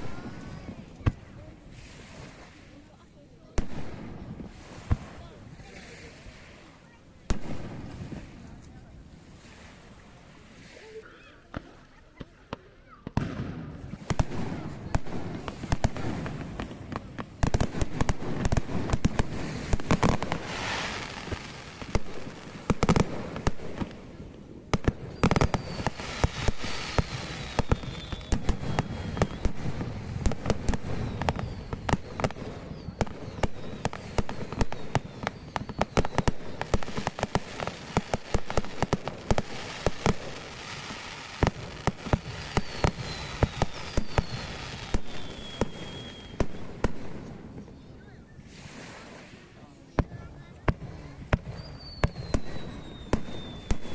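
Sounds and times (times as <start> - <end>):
fireworks crackling: 0.0 - 53.9
fireworks exploding: 0.0 - 53.9
falling high whistle: 26.9 - 29.6, 42.5 - 46.5.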